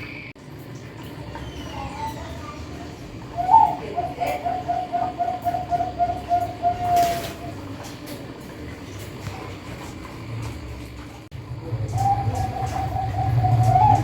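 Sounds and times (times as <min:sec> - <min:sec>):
caged bird calling: 0:01.2 - 0:07.8, 0:11.6 - 0:14.0.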